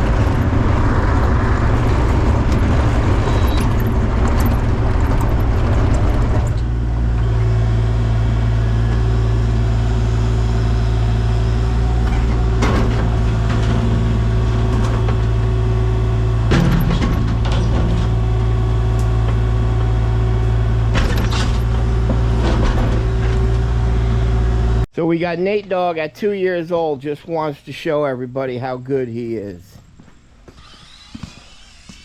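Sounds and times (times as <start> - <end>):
engine humming steadily: 0.0 - 24.9.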